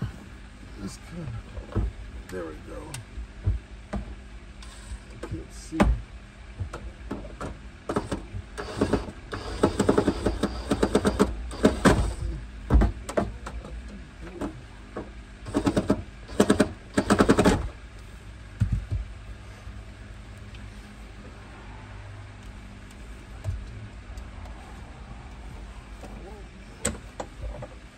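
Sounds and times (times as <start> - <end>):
power drill driving screws: 7.9 - 12.3, 15.5 - 17.6.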